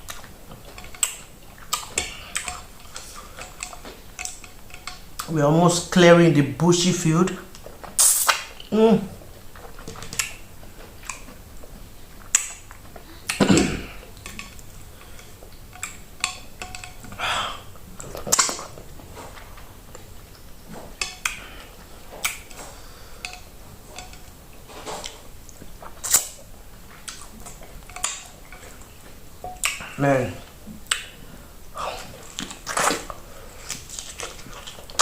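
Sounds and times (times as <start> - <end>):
wet mouth clicks and smacks: 7.5 - 8.7, 22.2 - 22.6, 30.8 - 31.2
slurping: 12.2 - 35.0
dishes clinking: 13.4 - 19.6, 22.5 - 25.3.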